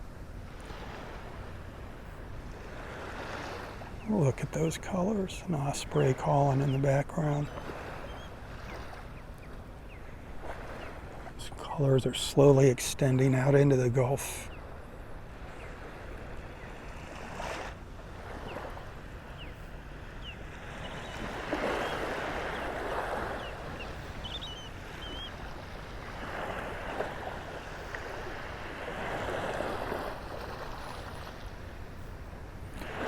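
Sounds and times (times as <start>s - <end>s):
small waves lapping on shore: 0.0s - 33.0s
faint high bird chirps: 5.6s - 10.1s, 19.3s - 25.4s.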